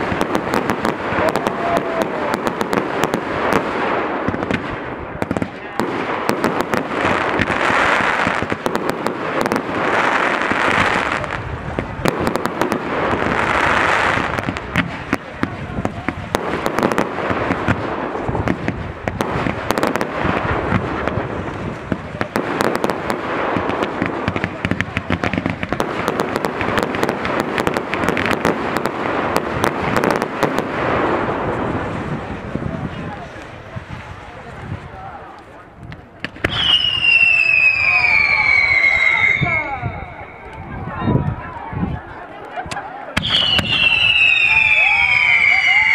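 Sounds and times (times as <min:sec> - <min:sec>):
dense fireworks crackling: 0:00.0 - 0:45.9
faint short whistle: 0:36.5 - 0:40.4.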